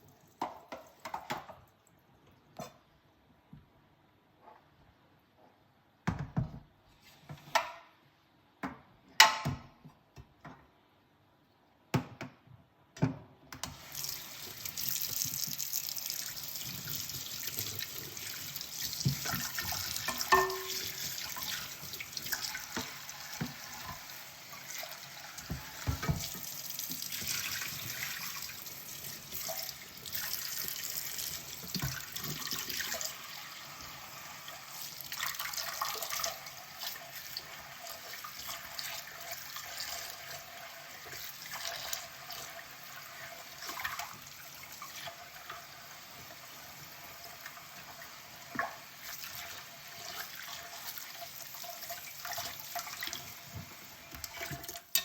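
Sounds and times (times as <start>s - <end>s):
tap water running into sink: 13.6s - 55.0s
crockery clinking in a sink: 20.0s - 21.0s.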